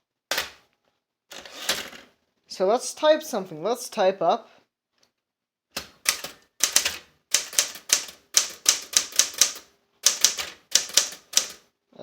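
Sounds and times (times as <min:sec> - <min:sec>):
typewriter key strikes: 0:05.8 - 0:11.6.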